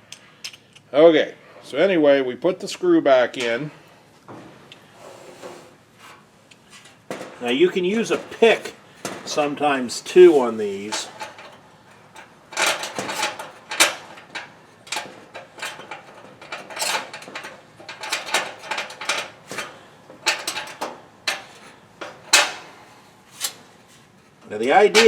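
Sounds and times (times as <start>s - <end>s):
metallic clicks and scrapes: 10.1s - 25.0s.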